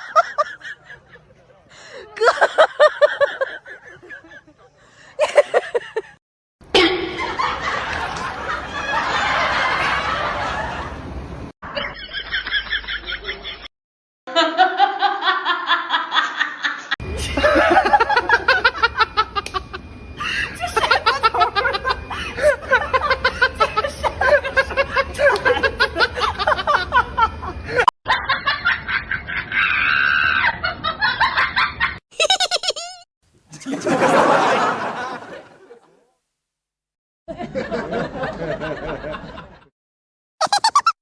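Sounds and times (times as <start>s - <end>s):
people laughing loudly: 0.0s - 6.2s, 6.8s - 11.1s, 11.7s - 13.7s, 14.3s - 36.0s, 37.3s - 39.7s, 40.4s - 41.0s
high-pitched rapid laugh: 14.3s - 34.8s, 40.4s - 41.0s.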